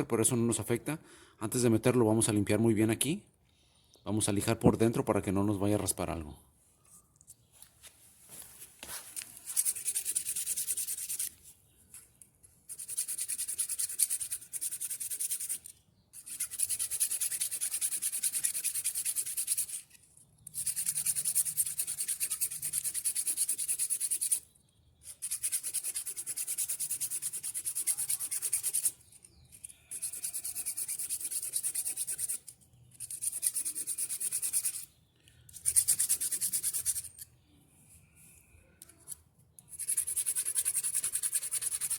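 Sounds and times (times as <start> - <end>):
sandpaper scraping metal: 8.9 - 11.4, 12.7 - 35.0, 35.6 - 37.2, 39.7 - 41.9.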